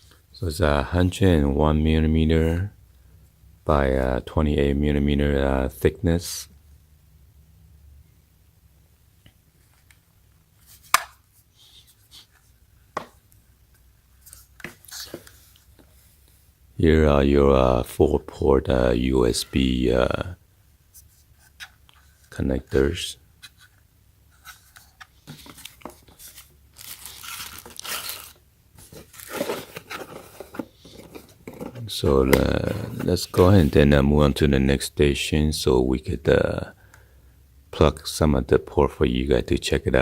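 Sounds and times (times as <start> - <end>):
faint handling noise: 9.2 - 16.6, 20.8 - 34.1
packaging rustling and crinkling: 24.4 - 33.7.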